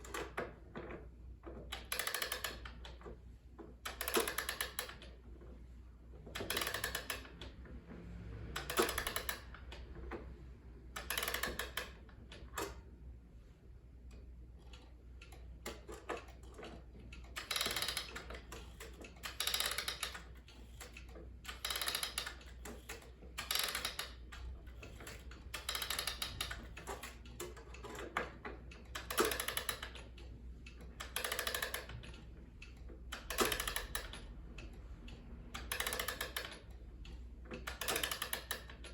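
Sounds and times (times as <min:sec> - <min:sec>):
clock key winding clicks: 0:17.1 - 0:38.9.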